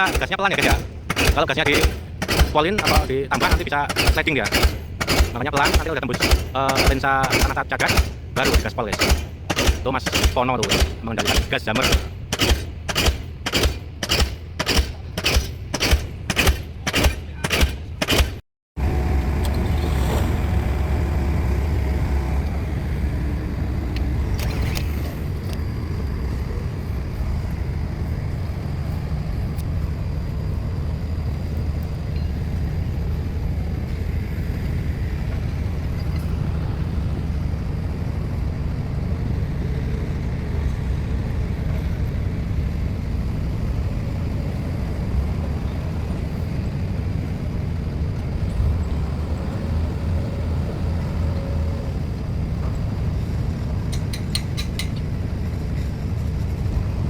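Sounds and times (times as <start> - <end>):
heavy diesel engine running: 0.0 - 17.8, 18.8 - 57.0
pile-driving hammer blows: 0.0 - 18.4.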